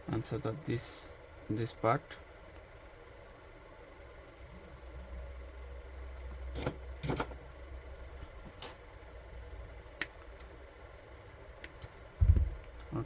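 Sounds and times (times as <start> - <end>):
metal parts clicking and clinking: 6.6 - 7.4.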